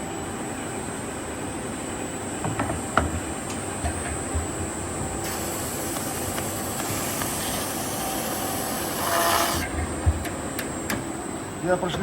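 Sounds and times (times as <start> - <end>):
sanding machine rasping: 5.3 - 9.7.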